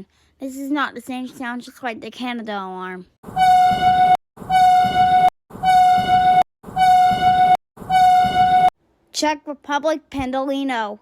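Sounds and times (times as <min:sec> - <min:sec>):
alarm horn tone blasts: 0:03.2 - 0:08.7.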